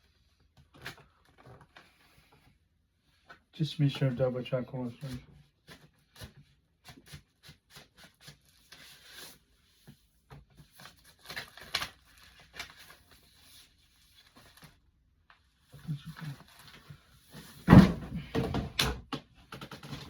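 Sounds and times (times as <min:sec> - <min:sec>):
rustling of packaging: 0:00.4 - 0:02.5, 0:04.9 - 0:18.5.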